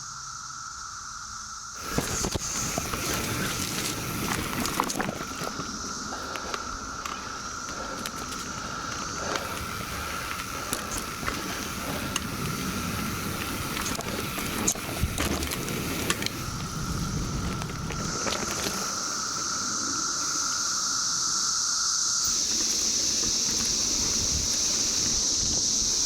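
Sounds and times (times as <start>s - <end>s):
cicada chorus drone: 0.0s - 26.0s
tyre and wind rumble: 1.8s - 19.5s
bike rattling over bumps: 1.8s - 21.1s, 22.2s - 26.0s.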